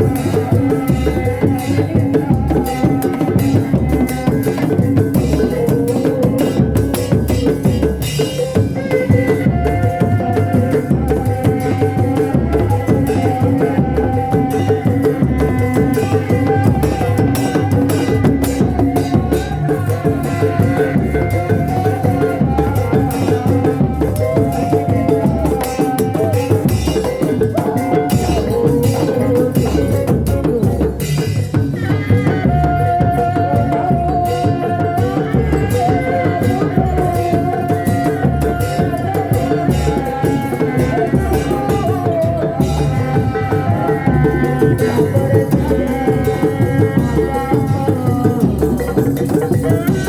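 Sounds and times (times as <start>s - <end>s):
drums beating fast rhythm: 0.0s - 50.0s
loud held shawm melody: 0.0s - 50.0s.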